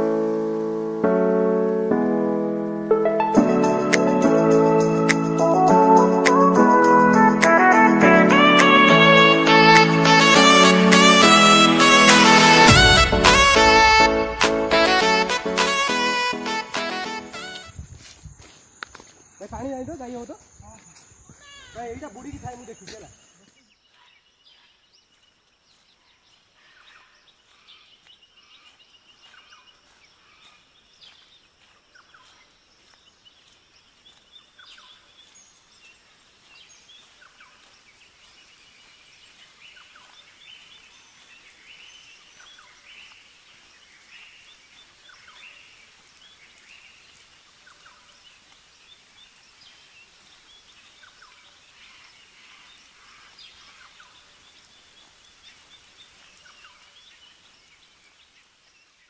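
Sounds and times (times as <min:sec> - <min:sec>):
faint steady hiss: 0:13.3 - 0:59.0
birds chirping and trilling: 0:18.8 - 0:59.0.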